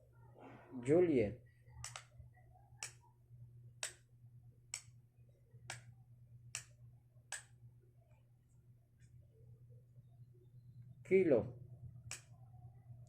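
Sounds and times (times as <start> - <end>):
low steady hum: 0.0 - 13.0
signalling light switch clicking: 1.8 - 2.1, 3.8 - 4.0, 6.5 - 7.5, 12.0 - 12.3.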